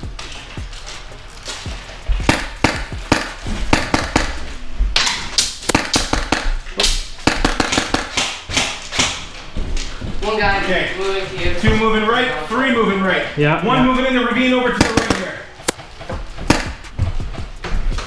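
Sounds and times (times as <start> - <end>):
background music: 0.0 - 18.0
airsoft guns firing: 1.6 - 9.5, 14.6 - 15.8, 16.4 - 16.9.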